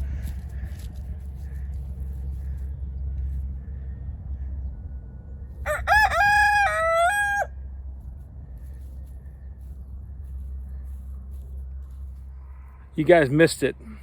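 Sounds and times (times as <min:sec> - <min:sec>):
rooster crowing: 0:05.6 - 0:07.6.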